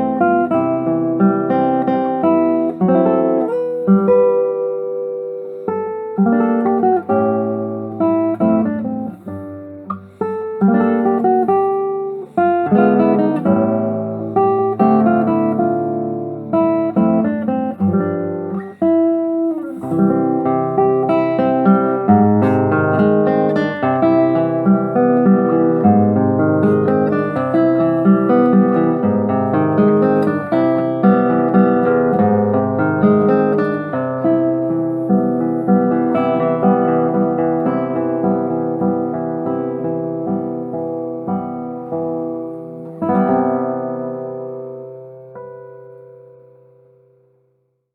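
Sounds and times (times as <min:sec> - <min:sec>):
acoustic guitar playing: 0:00.0 - 0:47.8.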